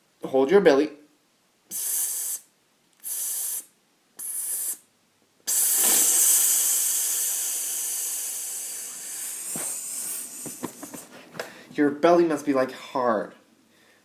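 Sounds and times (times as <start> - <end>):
person hissing breath through teeth: 1.7 - 4.9, 5.5 - 10.7.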